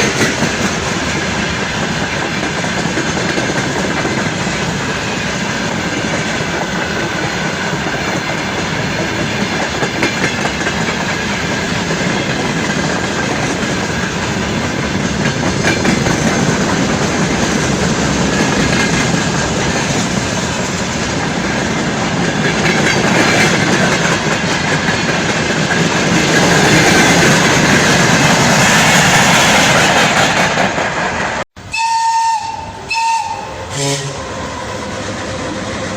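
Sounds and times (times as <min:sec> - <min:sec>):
wheels clacking over rail joints: 0:00.0 - 0:31.4
freight train rumble: 0:00.0 - 0:35.9.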